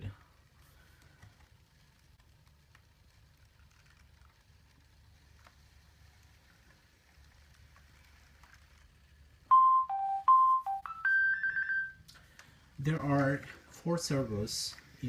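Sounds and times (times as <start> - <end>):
robot dog electronic beep melody: 9.5 - 12.0.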